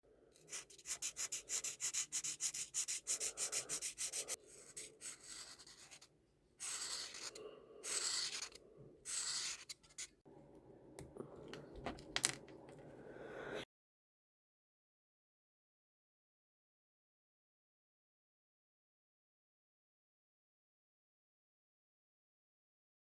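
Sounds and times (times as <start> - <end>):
pencil scratching on paper: 0.4 - 10.2.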